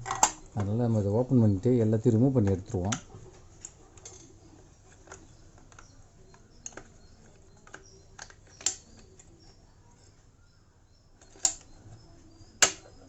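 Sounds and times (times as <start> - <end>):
plastic casing clicks and taps: 5.0 - 9.4, 12.6 - 13.0.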